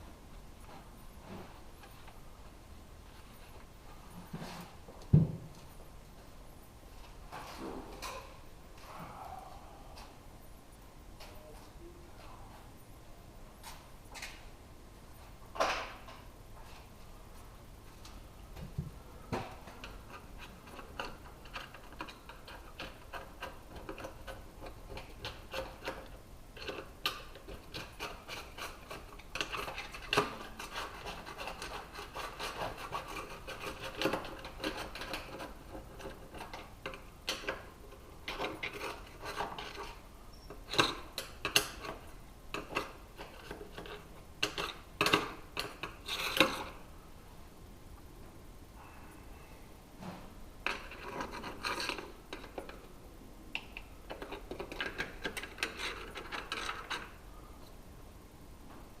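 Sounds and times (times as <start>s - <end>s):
hand scraper scraping sealant: 20.1s - 36.7s, 38.3s - 40.0s, 42.6s - 46.8s, 50.7s - 52.8s, 54.2s - 57.2s.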